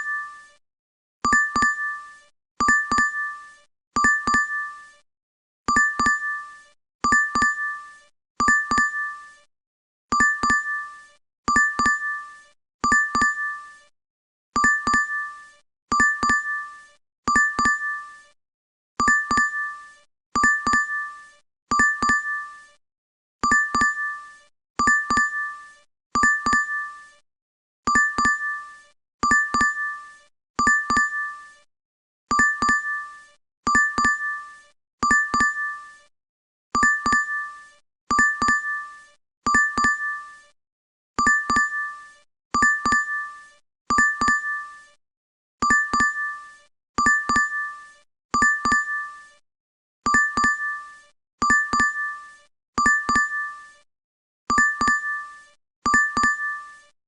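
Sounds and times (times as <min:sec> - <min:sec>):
notification chime dings: 0:55.9 - 0:56.6.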